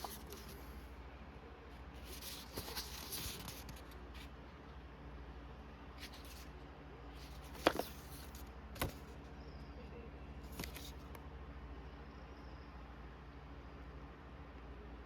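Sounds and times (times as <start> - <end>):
packaging rustling: 2.0 - 3.9, 7.2 - 9.0.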